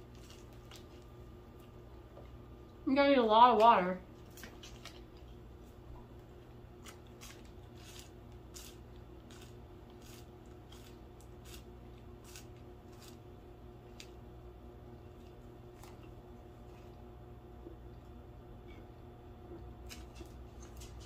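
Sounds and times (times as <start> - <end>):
chewing with mouth clicks: 15.0 - 21.0.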